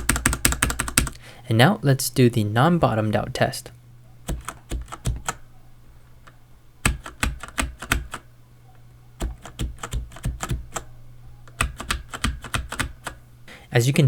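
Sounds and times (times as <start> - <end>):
mechanical keyboard keystrokes: 0.0 - 1.2, 4.2 - 5.4, 6.2 - 8.3, 9.2 - 13.2
steady low hum: 0.0 - 14.0.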